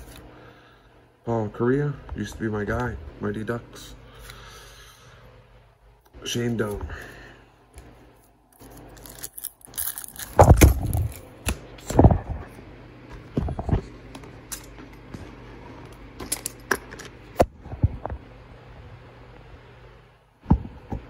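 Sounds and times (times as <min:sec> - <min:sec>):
cards and wrappers rustling: 0:00.0 - 0:00.2, 0:08.2 - 0:12.1
low steady hum: 0:00.0 - 0:21.0.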